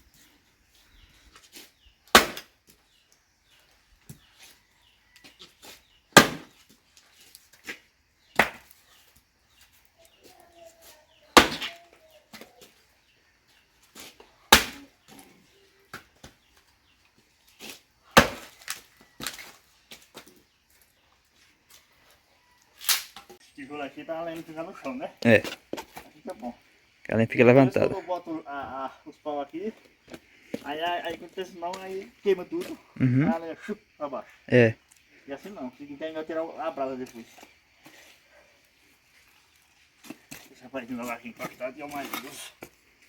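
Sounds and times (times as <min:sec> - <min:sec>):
axe blows splitting firewood: 0:01.6 - 0:02.5, 0:06.1 - 0:06.7, 0:07.6 - 0:08.8, 0:11.4 - 0:11.8, 0:13.9 - 0:14.9, 0:17.5 - 0:19.6.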